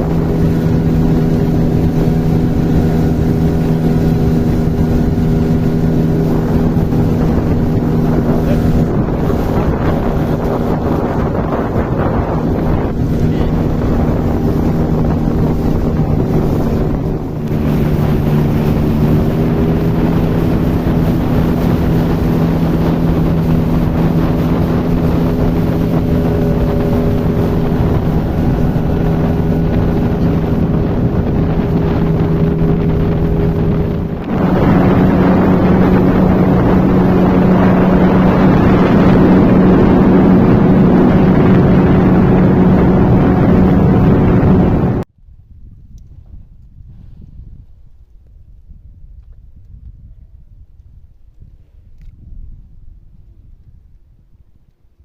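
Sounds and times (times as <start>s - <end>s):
motorboat engine running: 0.0s - 45.1s
wind buffeting microphone: 0.0s - 55.0s.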